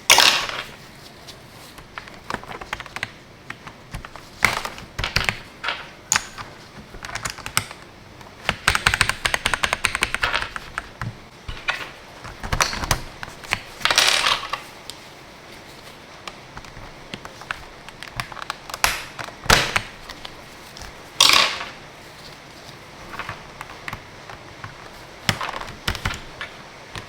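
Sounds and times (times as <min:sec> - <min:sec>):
mechanical keyboard typing: 0:01.9 - 0:14.6, 0:16.5 - 0:21.8, 0:23.0 - 0:27.0.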